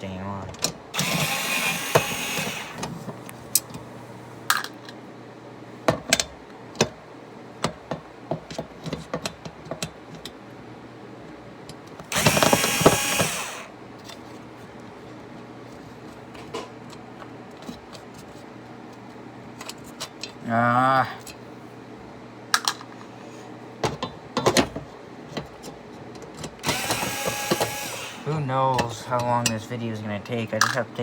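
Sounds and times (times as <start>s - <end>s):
power drill driving screws: 1.0s - 2.9s, 12.1s - 13.7s, 26.6s - 28.4s.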